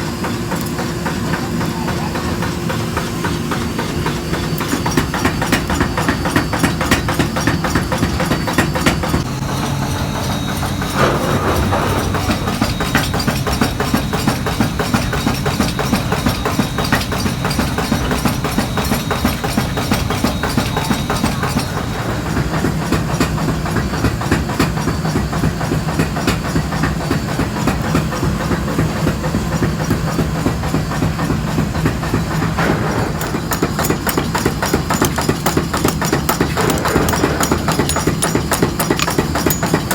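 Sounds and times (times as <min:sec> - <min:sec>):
workshop machinery hum and clatter: 0:00.0 - 0:39.9.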